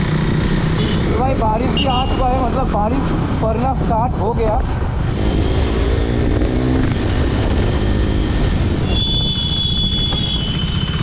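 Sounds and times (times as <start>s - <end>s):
motorcycle engine running: 0.0s - 2.6s, 5.1s - 11.0s
road noise: 0.0s - 11.0s.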